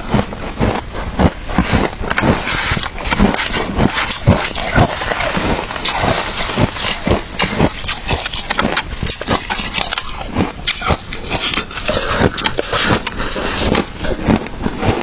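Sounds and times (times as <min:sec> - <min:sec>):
shaved ice crunching: 0:02.1 - 0:15.0.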